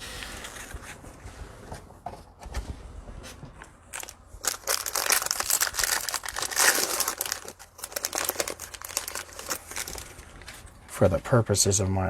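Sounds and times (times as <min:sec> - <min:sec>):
cellophane wrapper crinkling: 0:03.9 - 0:10.8.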